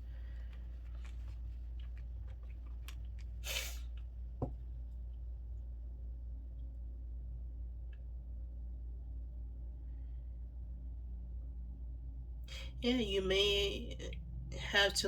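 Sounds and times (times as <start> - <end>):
steady low hum: 0.0 - 15.0
cards rustling and clicking: 0.2 - 4.0
breath through the nose: 3.4 - 3.9.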